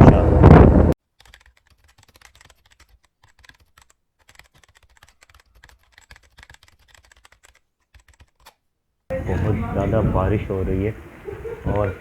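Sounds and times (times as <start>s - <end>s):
faint low rumble: 0.0s - 1.0s
raindrops ticking on camera housing: 1.5s - 12.0s.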